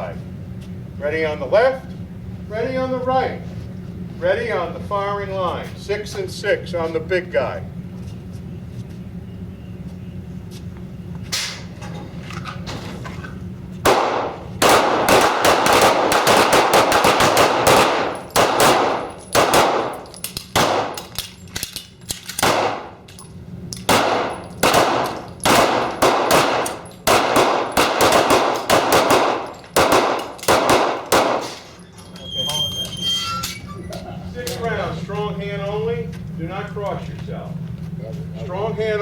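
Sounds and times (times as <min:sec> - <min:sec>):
handgun shots: 0:13.8 - 0:22.9, 0:23.8 - 0:31.6.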